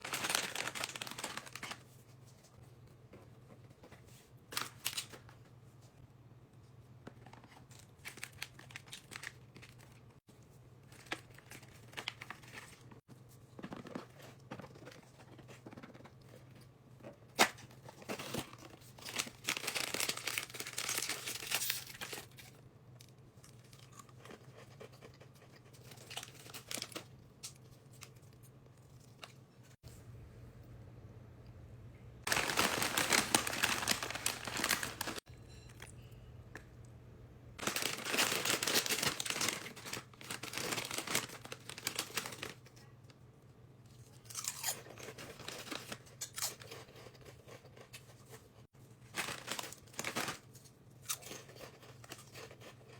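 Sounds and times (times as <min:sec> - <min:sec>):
packaging crinkling and tearing: 0:00.0 - 0:02.0, 0:07.3 - 0:10.0, 0:10.8 - 0:13.0, 0:17.4 - 0:22.6, 0:25.8 - 0:28.3, 0:32.3 - 0:35.2, 0:37.6 - 0:42.8, 0:49.0 - 0:52.6
faint low hum: 0:00.0 - 0:52.9.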